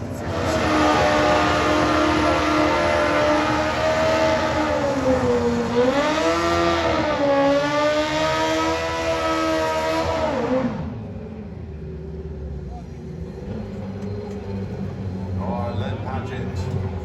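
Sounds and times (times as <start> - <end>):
motorcycle engine revving high: 0.0 - 11.2.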